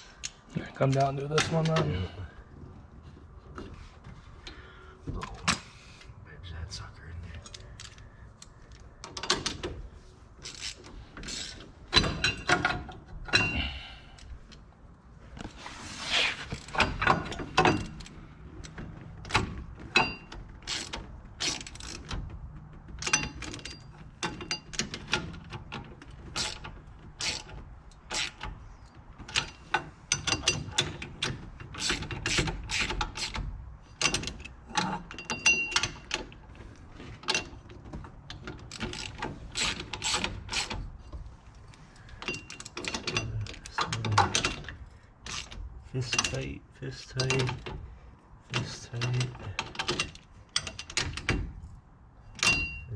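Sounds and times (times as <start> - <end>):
ratchet wrench clicking: 27.2 - 27.5, 31.8 - 33.4, 38.7 - 40.8.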